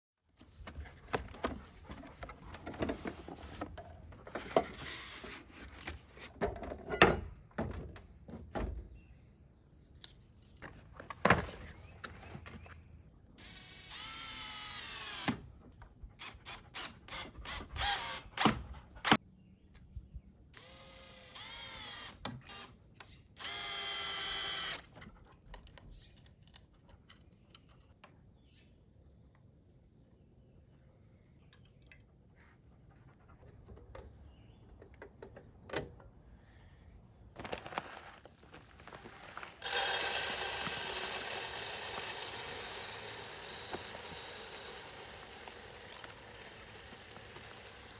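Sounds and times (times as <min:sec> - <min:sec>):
power drill whining: 0:04.5 - 0:05.5, 0:13.4 - 0:15.5, 0:16.2 - 0:19.2, 0:20.6 - 0:22.8, 0:23.4 - 0:24.9, 0:39.0 - 0:47.9.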